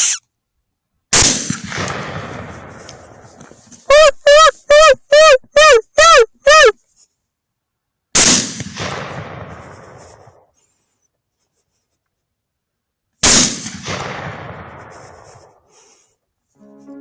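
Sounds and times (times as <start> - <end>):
rifle shots with echo: 1.2 - 3.3, 8.2 - 10.3, 13.2 - 15.3.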